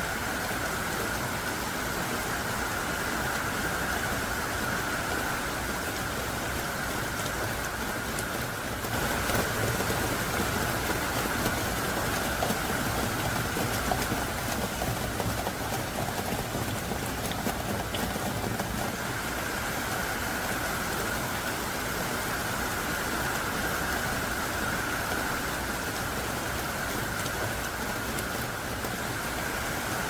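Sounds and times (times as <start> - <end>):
heavy rain pouring: 0.0 - 30.0
raindrop ticks: 5.1 - 19.3, 23.2 - 30.0.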